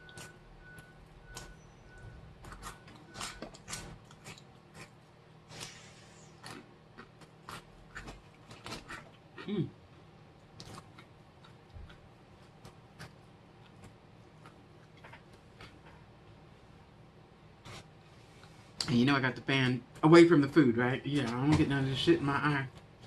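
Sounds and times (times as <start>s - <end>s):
crunchy snacks being chewed: 2.4s - 9.5s, 10.4s - 15.8s.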